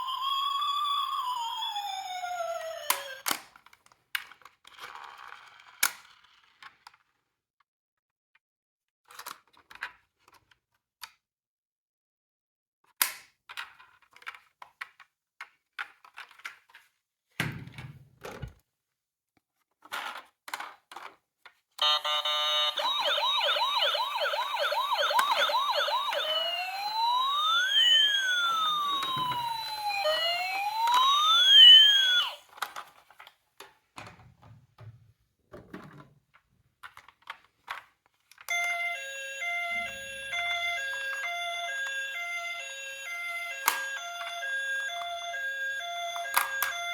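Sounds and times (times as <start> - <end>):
toy electronic siren: 0.0 - 3.3, 21.8 - 32.5, 38.5 - 46.9
plastic toy cars clicking: 2.9 - 7.3, 9.0 - 11.2, 12.9 - 16.9, 19.8 - 21.6, 31.8 - 33.8, 35.8 - 38.5, 43.5 - 45.2, 46.0 - 46.9.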